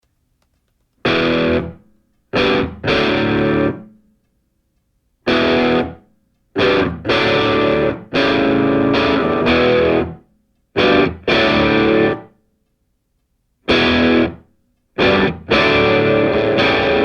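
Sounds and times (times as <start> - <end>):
distorted electric guitar chords: 1.0 - 1.8, 2.4 - 4.0, 5.3 - 6.0, 6.6 - 10.2, 10.8 - 12.3, 13.7 - 17.0.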